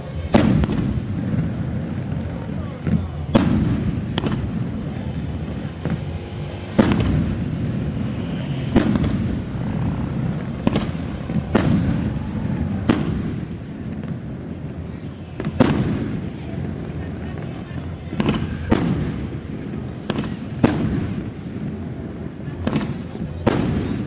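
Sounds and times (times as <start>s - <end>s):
low rumble of echoes: 0.0s - 14.9s
firework shells bursting: 0.0s - 16.2s.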